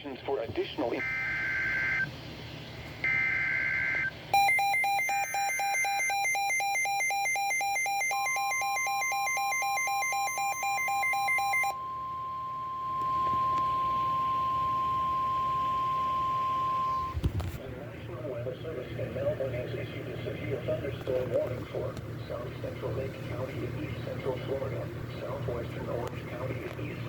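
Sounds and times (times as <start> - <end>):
steady high warning tone: 3.0 - 17.2
fast pulsing electronic beeping: 4.4 - 11.9.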